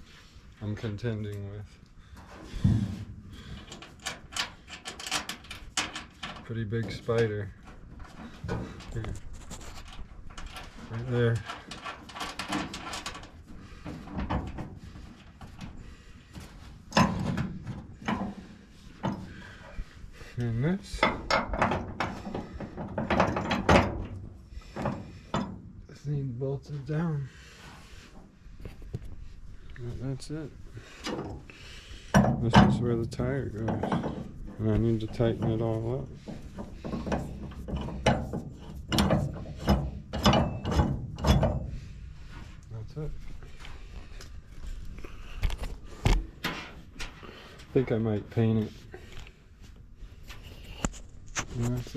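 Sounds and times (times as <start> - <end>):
metal hardware knocking and clanking: 2.6 - 9.2, 9.9 - 14.8, 16.9 - 19.3, 20.9 - 25.7, 32.1 - 43.3.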